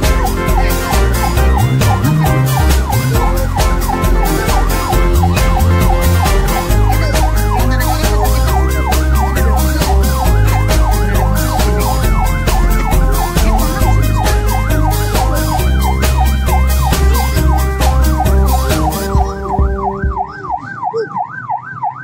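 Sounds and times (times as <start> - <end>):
loud music with heavy bass: 0.0 - 21.2
siren yelping: 0.0 - 22.0.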